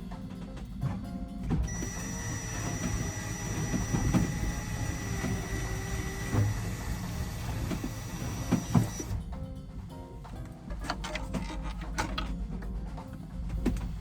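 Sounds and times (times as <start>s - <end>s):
knocks and clunks of hand work: 10.2s - 14.0s.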